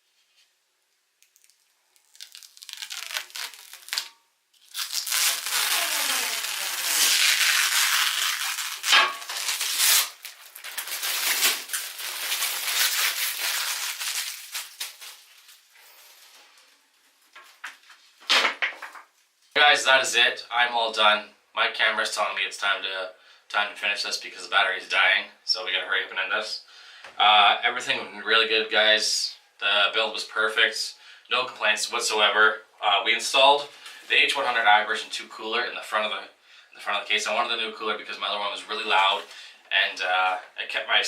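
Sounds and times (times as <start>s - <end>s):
crinkling and tearing: 1.2s - 18.2s.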